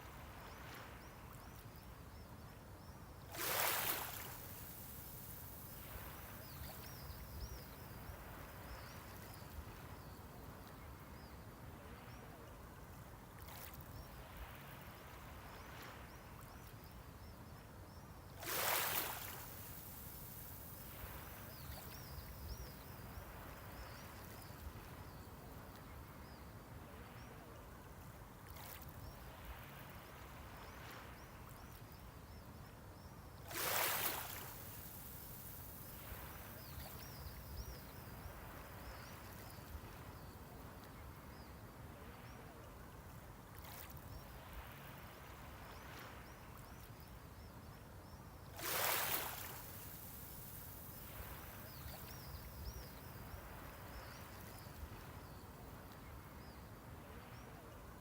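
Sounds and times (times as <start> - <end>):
small waves washing onto shore: 3.3 - 10.1, 18.4 - 26.0, 33.4 - 46.8, 48.5 - 58.0.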